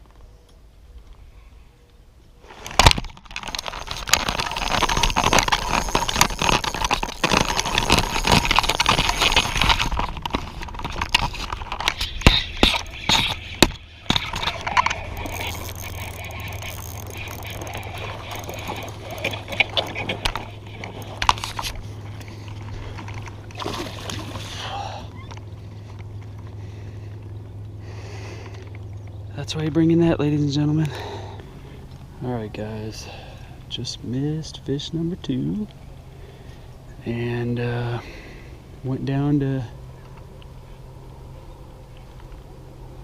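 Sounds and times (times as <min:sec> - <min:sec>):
steady low hum: 0:00.0 - 0:43.0
rustling and rattling: 0:02.5 - 0:24.3.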